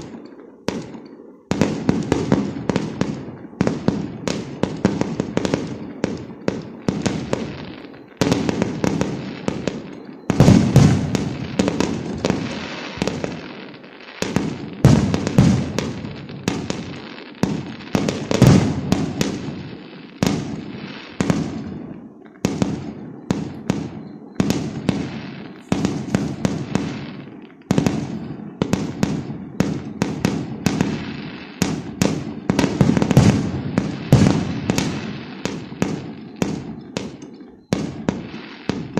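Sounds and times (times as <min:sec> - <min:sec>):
fireworks bangs and crackles: 0:00.0 - 0:38.9
heavy fireworks boom: 0:08.2 - 0:13.4, 0:14.2 - 0:38.9.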